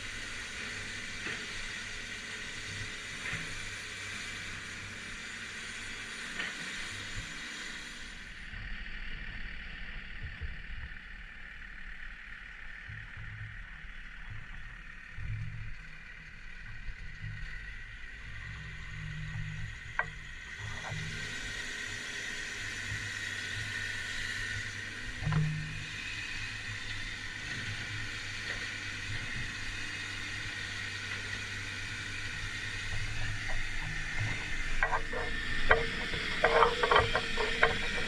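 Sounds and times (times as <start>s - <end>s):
diesel engine rumbling: 19.6s - 38.0s
sharp knocks: 34.8s - 38.0s.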